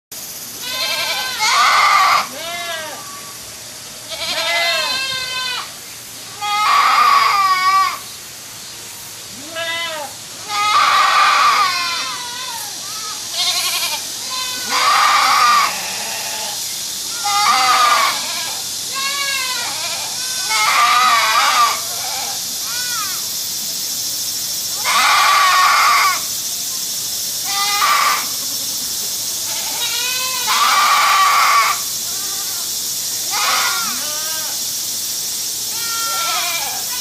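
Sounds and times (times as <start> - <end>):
steady hiss: 0.1 - 37.0
goats bleating: 0.6 - 3.2, 4.1 - 5.7, 6.4 - 8.0, 9.3 - 23.0, 27.4 - 28.4, 29.5 - 32.6, 33.3 - 34.6, 35.7 - 37.0.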